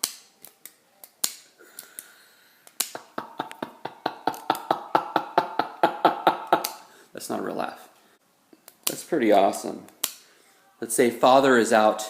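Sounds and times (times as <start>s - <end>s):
person laughing staccato: 2.9s - 6.8s.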